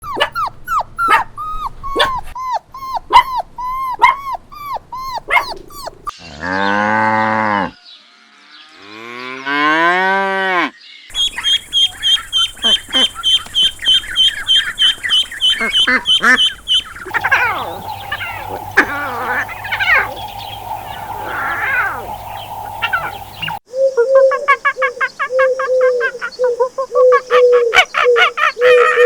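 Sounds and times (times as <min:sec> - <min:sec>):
cow mooing: 0:06.2 - 0:07.8
fast high calls: 0:11.1 - 0:23.6
short sharp animal calls: 0:17.1 - 0:23.6.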